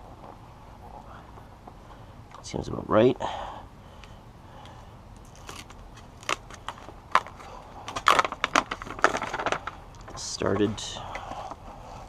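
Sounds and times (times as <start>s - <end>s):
foil sheet crinkling: 5.2s - 9.8s.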